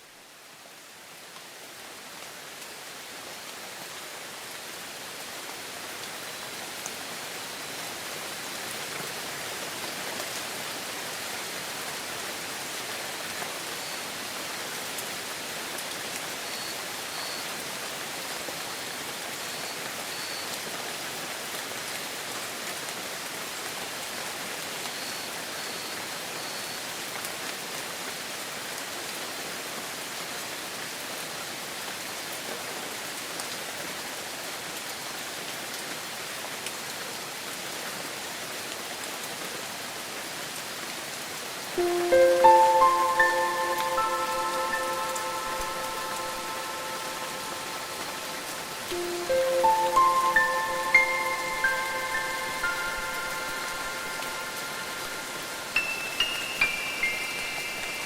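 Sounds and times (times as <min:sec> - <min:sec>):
heavy rain: 0:00.0 - 0:58.0
faint high chirps: 0:41.8 - 0:58.0.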